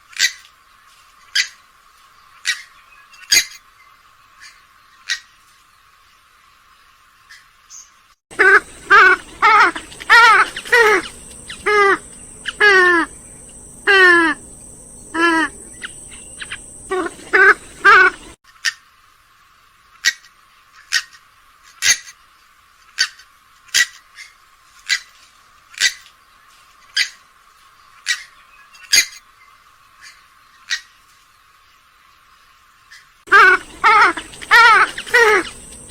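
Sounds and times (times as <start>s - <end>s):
bird honking calls: 8.3s - 18.4s, 33.3s - 35.9s.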